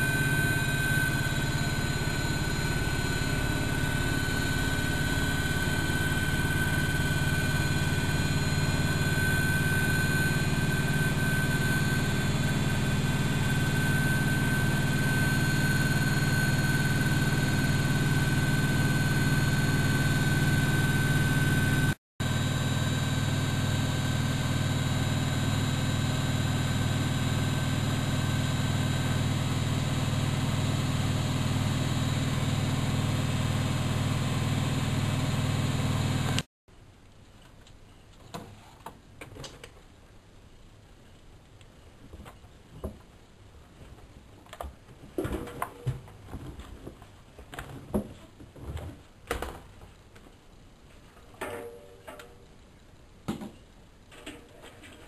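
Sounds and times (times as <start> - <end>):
washing machine motor whine: 0.0 - 36.5.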